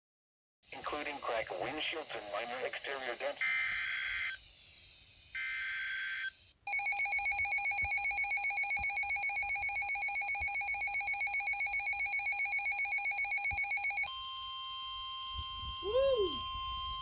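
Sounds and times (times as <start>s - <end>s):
two-tone alarm signal: 5.4s - 17.0s.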